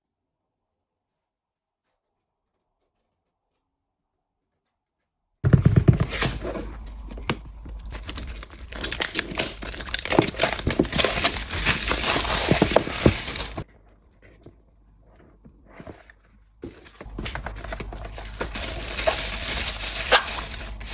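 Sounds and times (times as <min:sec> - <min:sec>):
packaging tearing and crinkling: 0:05.5 - 0:13.6, 0:16.6 - 0:20.9.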